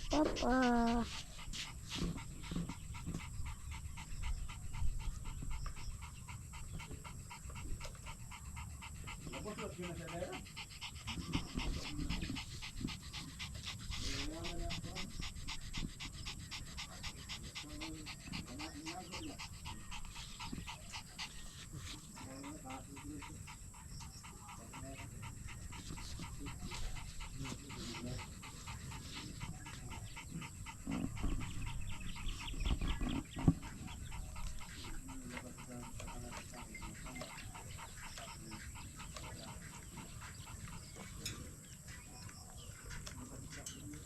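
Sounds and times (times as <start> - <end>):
rapid panting: 0.0 - 44.0.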